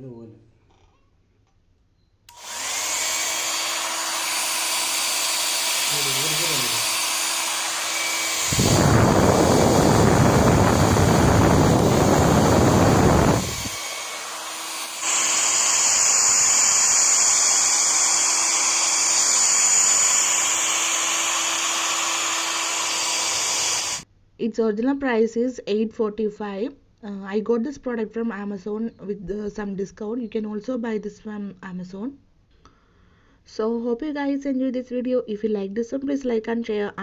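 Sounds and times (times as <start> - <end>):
hair dryer running: 2.3 - 24.0.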